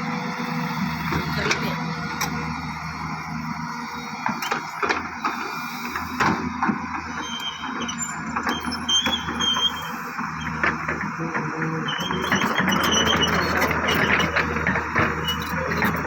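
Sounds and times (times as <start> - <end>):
excavator diesel engine running: 0.0 - 16.0.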